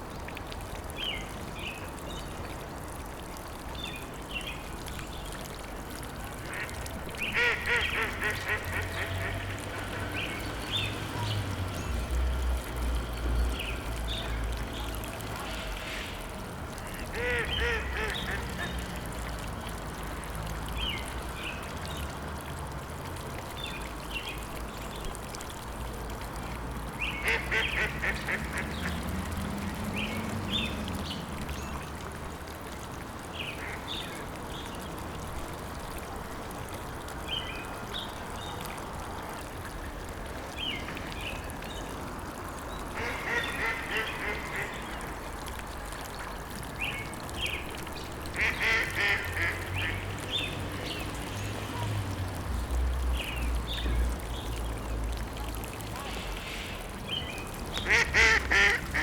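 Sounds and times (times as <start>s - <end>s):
ducks quacking: 48.4s - 50.0s, 57.8s - 59.0s.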